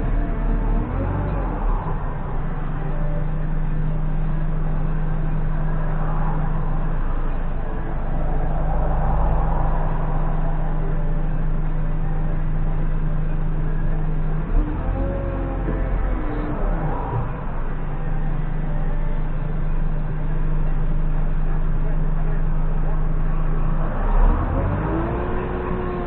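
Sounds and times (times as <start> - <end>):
diesel engine running: 0.0 - 26.0.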